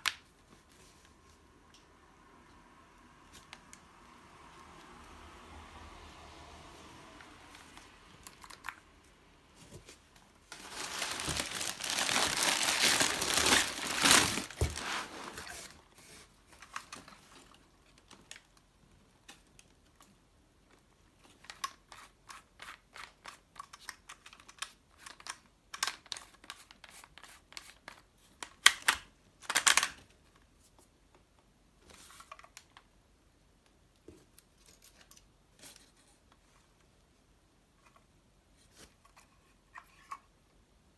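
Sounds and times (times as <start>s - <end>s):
packaging crinkling and tearing: 10.5s - 15.8s.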